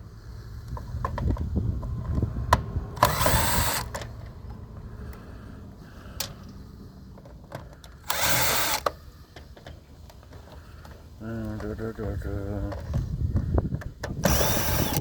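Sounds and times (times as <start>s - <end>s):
loud scraping rattle: 3.0s - 4.1s, 7.6s - 9.0s, 14.2s - 15.0s
power drill motor: 3.0s - 4.1s, 7.7s - 9.1s, 14.2s - 15.0s.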